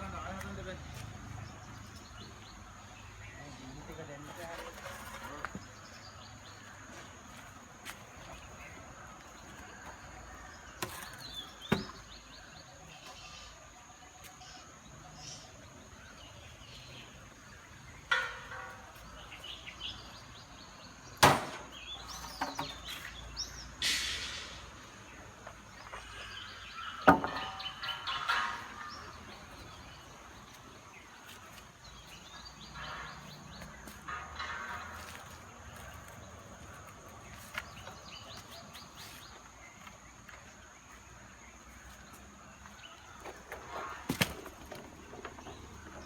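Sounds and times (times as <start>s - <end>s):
boards scraping concrete: 4.2s - 6.0s
wooden boards knocking and clattering: 10.8s - 12.1s, 18.1s - 19.1s, 21.2s - 23.0s, 27.0s - 29.8s, 43.2s - 46.0s.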